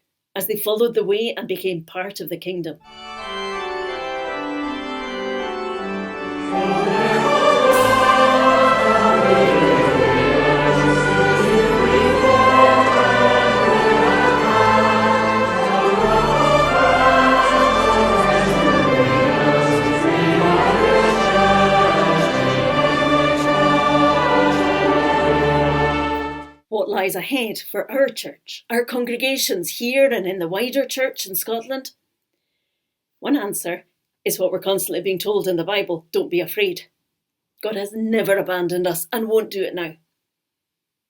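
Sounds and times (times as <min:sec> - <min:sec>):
choral singing with instruments: 0:04.4 - 0:26.6.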